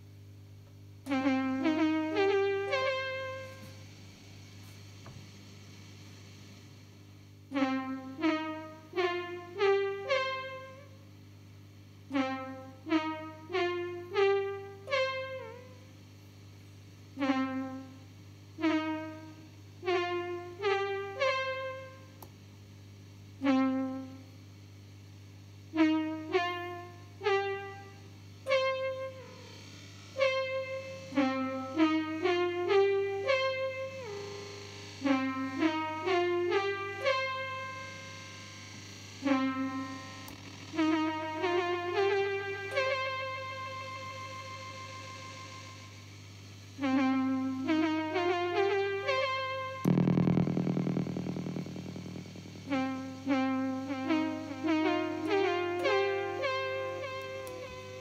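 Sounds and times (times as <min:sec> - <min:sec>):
steady low hum: 0:00.0 - 0:58.0
brass-like synthesizer notes with delay: 0:01.1 - 0:03.6, 0:07.5 - 0:11.0, 0:40.7 - 0:45.9, 0:46.8 - 0:58.0.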